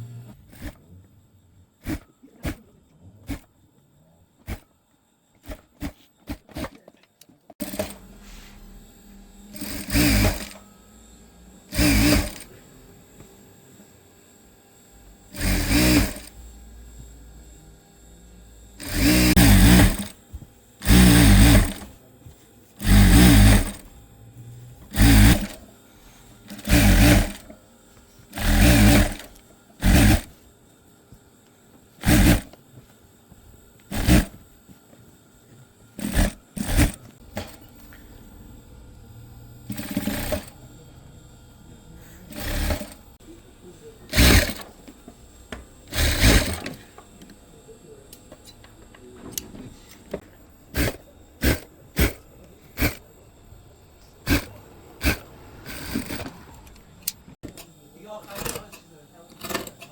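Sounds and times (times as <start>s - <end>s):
sewing machine stitching: 0.3s - 0.8s, 1.8s - 3.5s, 5.4s - 6.9s, 7.5s - 8.1s, 9.5s - 10.6s, 11.7s - 12.6s, 15.3s - 16.4s, 18.8s - 20.2s, 20.8s - 22.0s, 22.8s - 24.0s, 24.8s - 25.7s, 26.4s - 27.6s, 28.2s - 30.4s, 32.0s - 32.5s, 33.9s - 34.5s, 36.0s - 37.6s, 39.6s - 40.7s, 42.3s - 43.2s, 44.1s - 44.8s, 45.8s - 46.9s, 50.7s - 53.1s, 54.1s - 57.1s.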